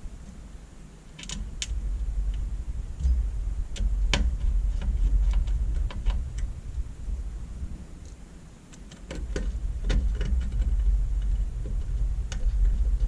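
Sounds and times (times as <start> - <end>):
low rumble of pieces set down: 1.6 - 6.4.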